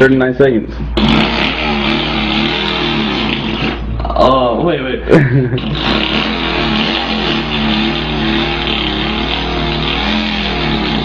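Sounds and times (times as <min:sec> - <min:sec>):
man imitating engine with voice: 0:01.0 - 0:04.6, 0:05.6 - 0:11.0.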